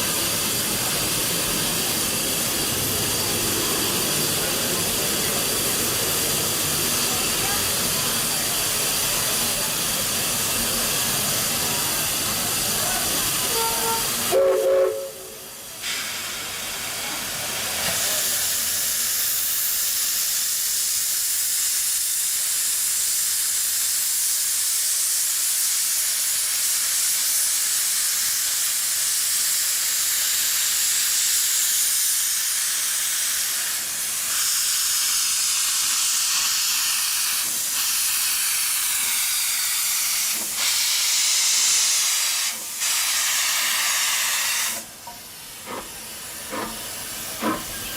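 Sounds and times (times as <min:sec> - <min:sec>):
steam hissing: 0:00.0 - 0:47.9
steam whistle chord: 0:13.5 - 0:15.4.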